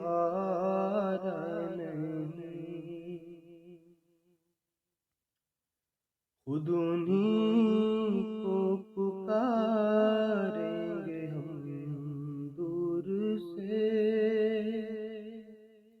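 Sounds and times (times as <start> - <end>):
man singing unaccompanied: 0.0 - 3.5, 6.5 - 15.4.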